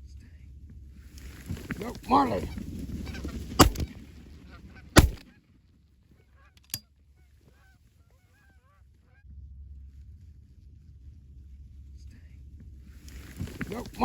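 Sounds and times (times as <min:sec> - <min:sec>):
geese honking faintly: 0:01.5 - 0:05.4, 0:07.2 - 0:09.2
shotgun shots: 0:03.6 - 0:03.9, 0:05.0 - 0:05.2.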